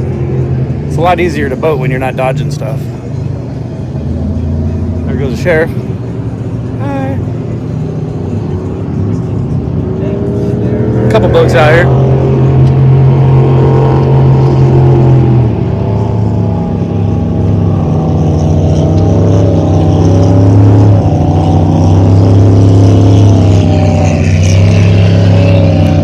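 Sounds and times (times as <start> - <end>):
motorboat engine running: 15.9 - 26.0.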